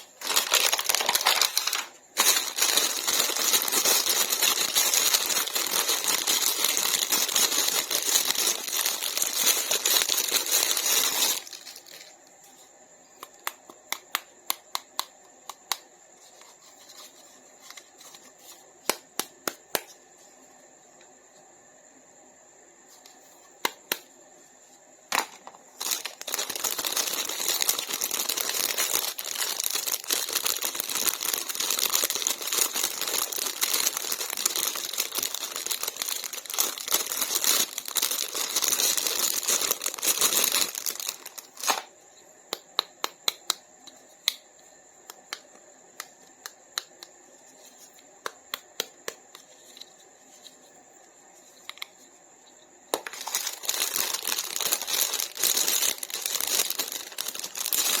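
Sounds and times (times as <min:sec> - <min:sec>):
plastic and paper crinkling: 0:00.0 - 0:12.2, 0:25.2 - 0:41.9, 0:53.0 - 0:58.0.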